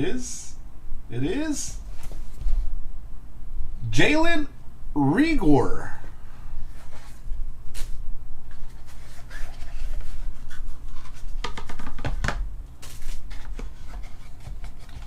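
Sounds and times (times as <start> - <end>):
low hum: 0.0 - 11.4
trading cards tapping and sliding: 8.6 - 15.0.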